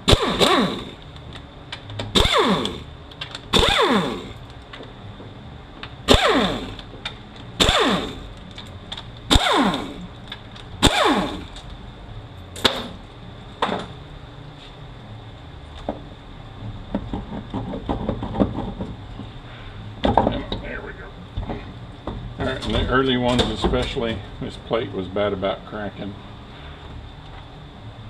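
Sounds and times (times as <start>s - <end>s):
power tool whine falling in pitch: 3.5s - 4.4s.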